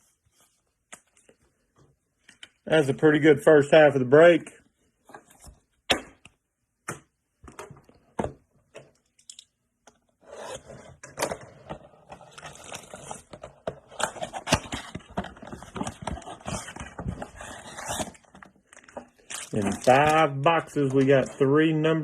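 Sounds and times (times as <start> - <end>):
packaging crinkling and scraping: 10.2 - 22.0.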